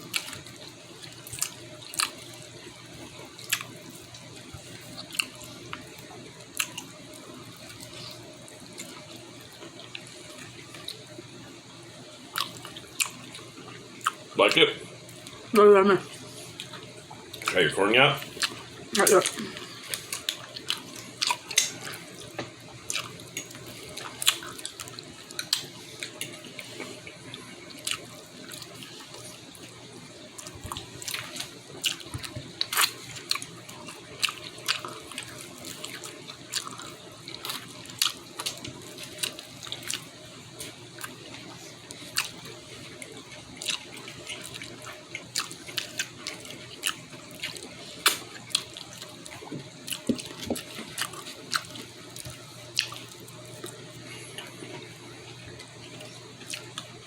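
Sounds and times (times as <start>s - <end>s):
wet chewing and lip smacking: 22.8s - 29.4s, 30.4s - 54.8s, 55.5s - 56.9s.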